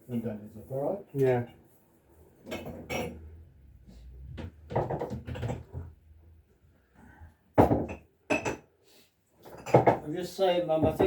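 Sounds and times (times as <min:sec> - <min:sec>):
small household knocks and clinks: 0:01.1 - 0:06.2, 0:07.0 - 0:08.8, 0:09.4 - 0:11.0.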